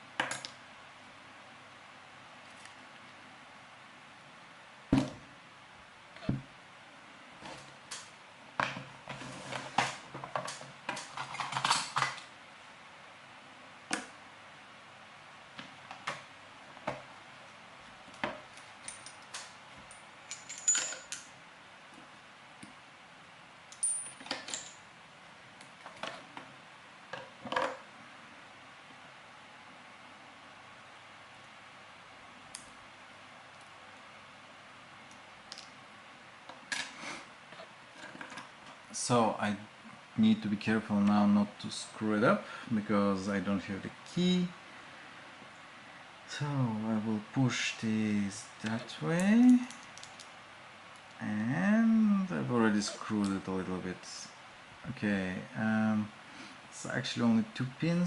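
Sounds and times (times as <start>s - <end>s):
faint steady hiss: 0.0s - 58.0s
metallic clicks and clinks: 18.8s - 21.3s.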